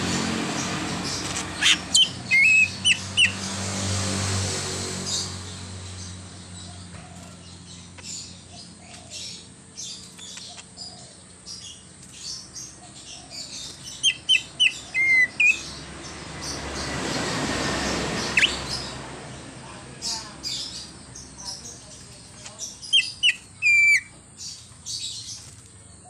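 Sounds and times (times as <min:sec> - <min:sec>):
bird singing chirps and whistles: 0:01.6 - 0:03.4, 0:14.0 - 0:15.6, 0:22.9 - 0:24.1.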